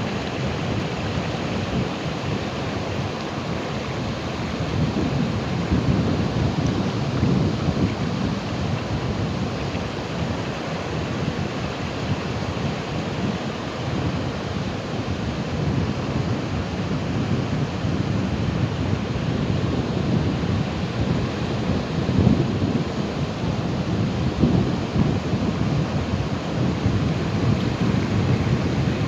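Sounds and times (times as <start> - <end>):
ocean waves breaking: 0.0 - 15.4, 19.7 - 29.0.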